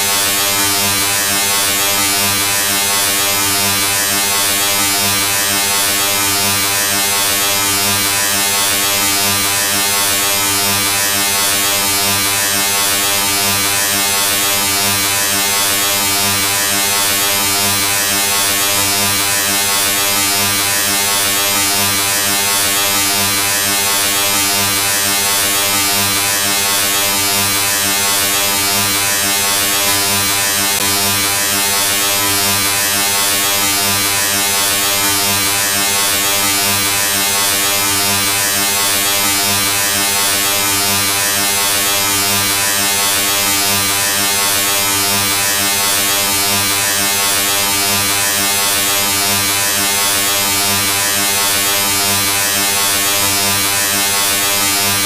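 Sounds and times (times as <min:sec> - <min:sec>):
electric buzz: 0:00.0 - 0:55.0.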